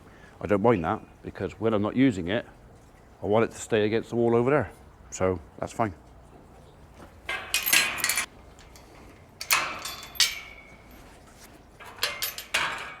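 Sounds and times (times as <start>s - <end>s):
steel gate clanking: 7.3s - 13.0s.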